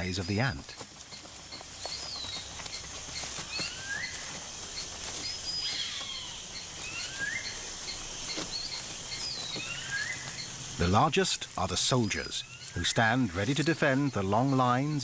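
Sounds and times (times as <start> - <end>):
high insect hiss: 0.0 - 15.0
rising whistled bird calls: 1.8 - 10.7.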